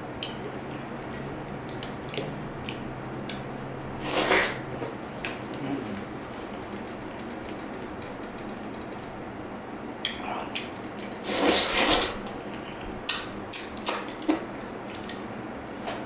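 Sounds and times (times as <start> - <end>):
loud rasping eating burst: 4.0 - 4.8
eating clicks and scrapes: 10.1 - 15.3.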